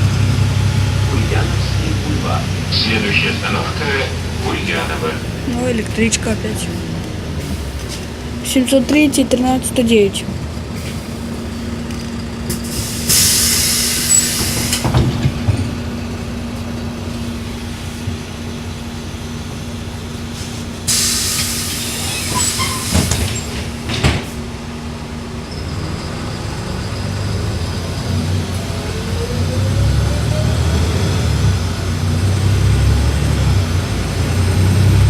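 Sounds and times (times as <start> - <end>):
bus engine idling: 0.0 - 35.0
air brake hiss: 12.6 - 14.9, 20.4 - 23.3.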